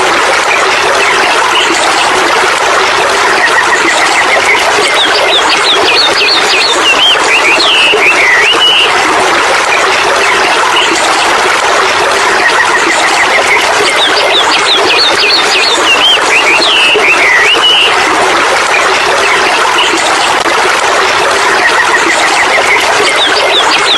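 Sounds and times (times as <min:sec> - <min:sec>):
waterfall rushing: 0:00.0 - 0:23.9
birds chirping and whistling: 0:03.5 - 0:08.9, 0:13.1 - 0:18.0, 0:22.4 - 0:23.9.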